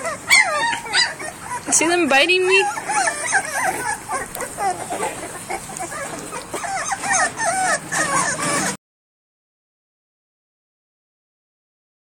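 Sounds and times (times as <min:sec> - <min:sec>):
puppies crying and whimpering: 0:00.0 - 0:08.8.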